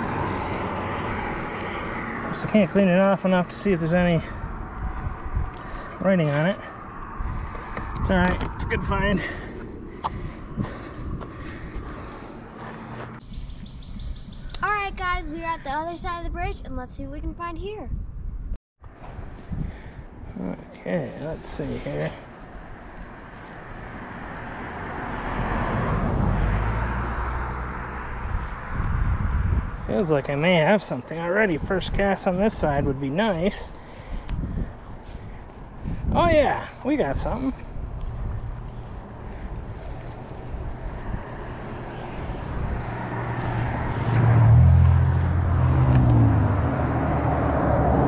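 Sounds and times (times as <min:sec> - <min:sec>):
vehicle driving past: 0:00.0 - 0:13.5, 0:22.1 - 0:36.0, 0:37.1 - 0:48.0
road noise: 0:00.0 - 0:48.0.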